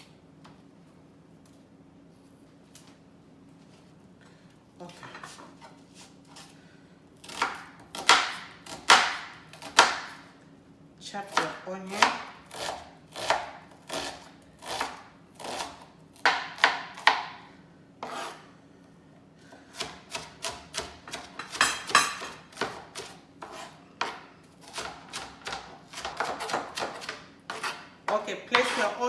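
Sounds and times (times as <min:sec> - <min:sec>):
knife chopping on cutting board: 0:07.2 - 0:10.3, 0:11.3 - 0:17.4, 0:18.0 - 0:18.4, 0:19.7 - 0:29.0.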